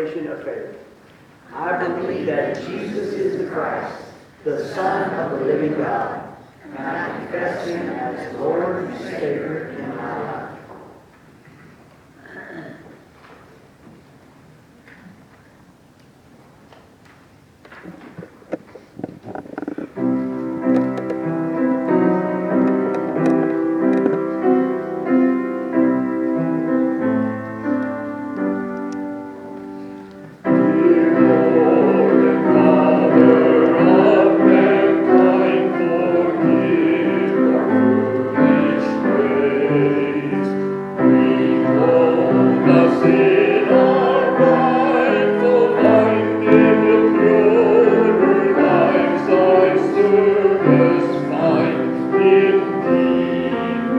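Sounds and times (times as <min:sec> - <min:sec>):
group singing a hymn: 0:01.5 - 0:11.0, 0:30.4 - 0:53.9.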